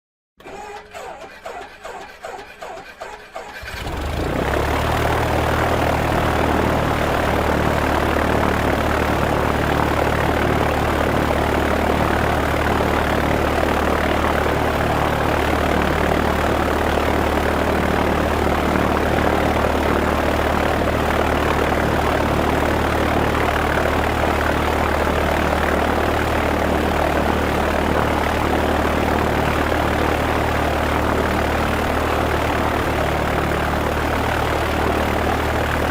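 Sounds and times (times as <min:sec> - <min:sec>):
starter motor cranking: 0:00.4 - 0:04.5
propeller plane engine idling: 0:00.8 - 0:35.9.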